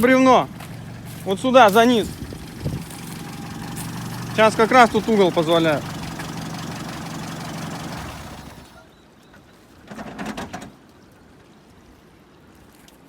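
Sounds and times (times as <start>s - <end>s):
engine idling: 0.0s - 8.8s.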